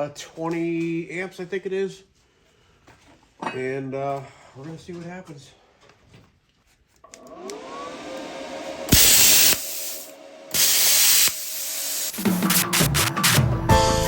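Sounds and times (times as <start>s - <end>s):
plasma cutter whine and hum: 8.9s - 13.1s
hissing air: 8.9s - 13.4s
plasma cutter hissing bursts: 8.9s - 13.4s
music: 12.1s - 14.0s.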